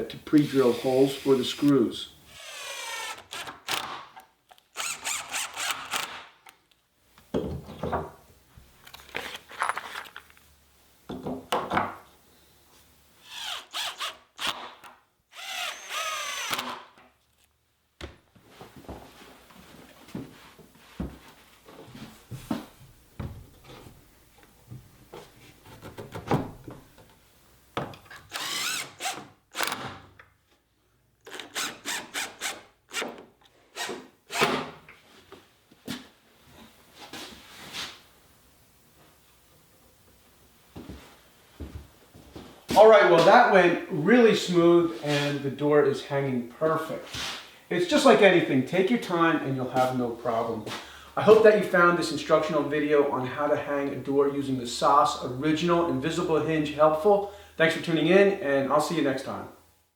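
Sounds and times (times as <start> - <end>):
power drill drilling: 0.4 - 1.7, 2.3 - 4.1, 4.8 - 6.3, 13.2 - 16.9, 28.3 - 29.9, 31.3 - 33.1.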